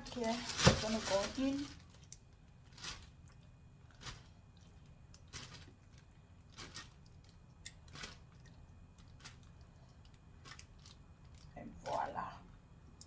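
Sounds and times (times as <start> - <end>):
bag rustling and crinkling: 0.0 - 3.2, 3.9 - 4.3, 5.3 - 8.3.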